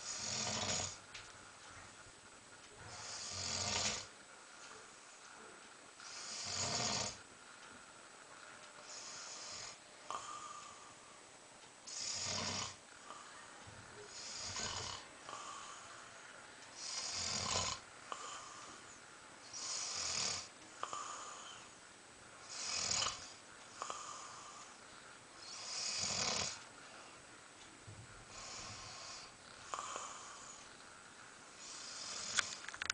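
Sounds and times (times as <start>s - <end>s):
person snoring: 0.0s - 1.0s, 2.9s - 4.1s, 6.0s - 7.2s, 8.8s - 11.0s, 11.9s - 13.4s, 14.0s - 16.2s, 16.8s - 18.8s, 19.5s - 21.8s, 22.4s - 24.8s, 25.4s - 26.6s, 28.3s - 30.8s, 31.6s - 32.6s
soft breathing: 2.7s - 17.2s, 18.0s - 27.4s, 28.2s - 32.9s.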